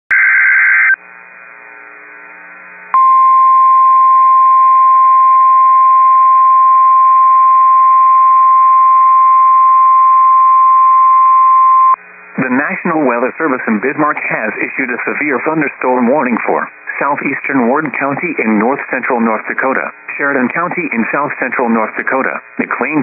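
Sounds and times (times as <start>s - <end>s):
faint radio hiss: 12.0s - 23.0s.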